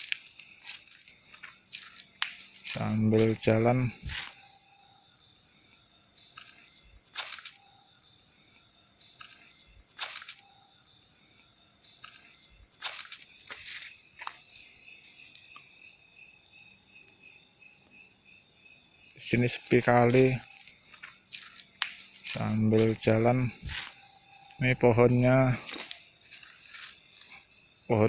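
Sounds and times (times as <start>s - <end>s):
footsteps crunching: 0.0s - 4.5s, 6.4s - 7.6s, 9.2s - 10.5s, 12.0s - 14.5s, 19.8s - 27.6s
crickets and insects chirping: 0.0s - 28.0s.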